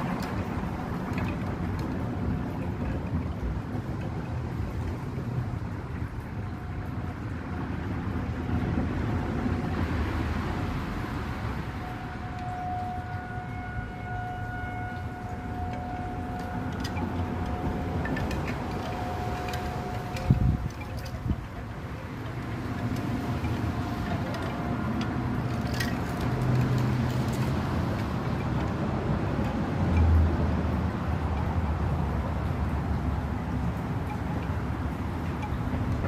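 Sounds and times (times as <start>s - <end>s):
low rumble of wind: 0.0s - 36.0s
traffic rumble: 0.0s - 36.0s
distant warning siren: 6.0s - 30.2s.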